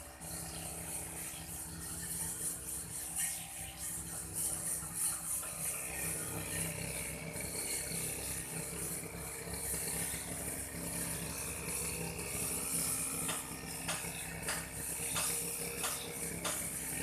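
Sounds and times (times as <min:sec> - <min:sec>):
brush cutter engine running: 0:00.0 - 0:17.0
sharp ticks: 0:13.2 - 0:16.7.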